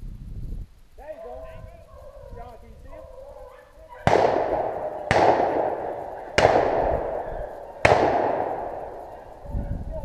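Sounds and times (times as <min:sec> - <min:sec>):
shotgun shots echoing: 0:02.9 - 0:09.6.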